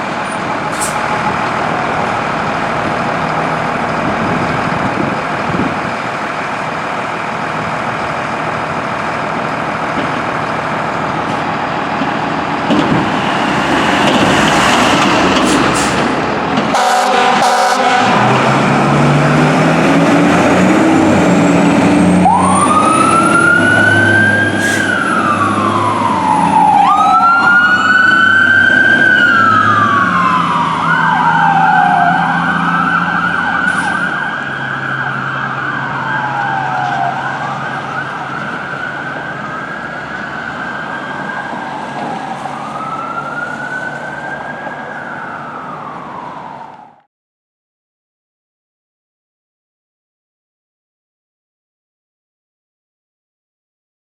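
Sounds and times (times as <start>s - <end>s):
air horn tones: 16.7s - 18.4s
electronic siren wailing: 16.7s - 18.6s, 21.6s - 47.0s.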